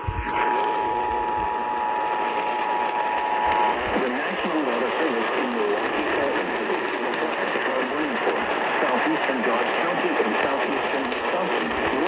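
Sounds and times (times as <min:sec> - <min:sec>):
radio static hiss: 0:00.0 - 0:12.0
person speaking over radio: 0:03.4 - 0:12.0.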